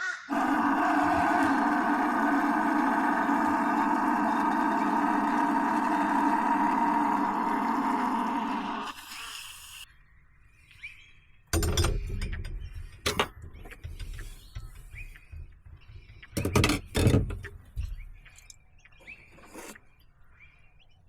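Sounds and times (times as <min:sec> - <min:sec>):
knocks and clunks of handling: 0:11.6 - 0:19.9.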